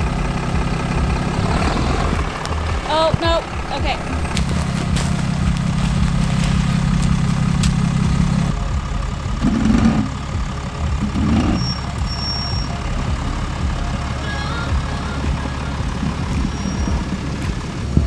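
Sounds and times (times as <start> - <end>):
low hum: 0.0 - 18.0
vehicle engine rumbling: 0.0 - 18.0.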